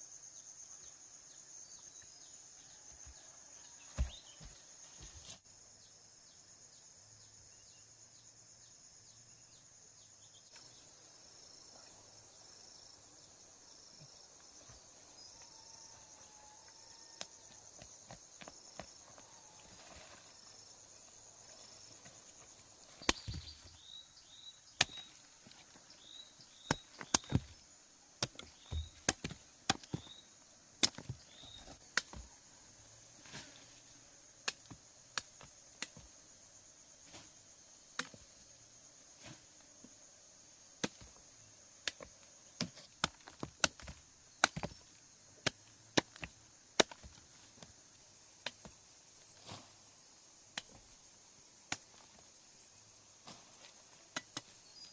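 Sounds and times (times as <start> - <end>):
high insect drone: 0.0 - 54.9
sharp chopping strikes: 24.8 - 25.1.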